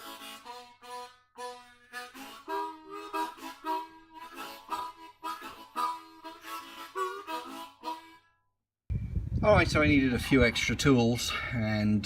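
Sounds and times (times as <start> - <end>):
harmonica music: 0.0 - 8.6.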